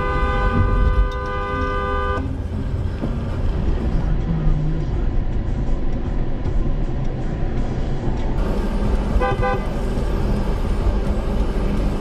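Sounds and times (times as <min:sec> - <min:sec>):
car horn short beeps: 0:00.0 - 0:02.3
car road and engine rumble: 0:00.0 - 0:12.0.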